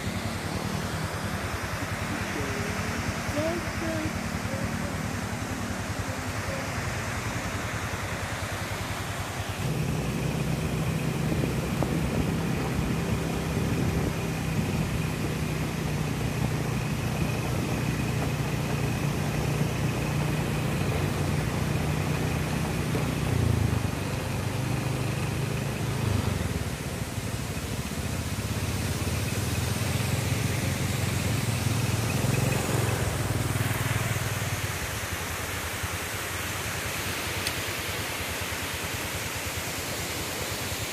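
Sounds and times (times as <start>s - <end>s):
vehicle engine running: 0.0s - 40.9s
waterfall rushing: 0.0s - 40.9s.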